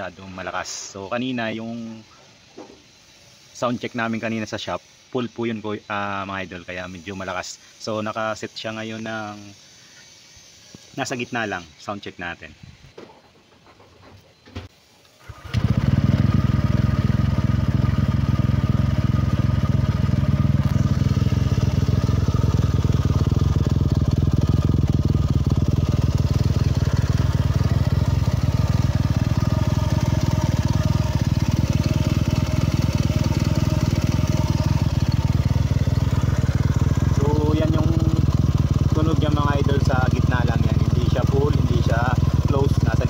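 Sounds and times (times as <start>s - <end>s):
scooter engine starting and idling: 15.2s - 43.0s.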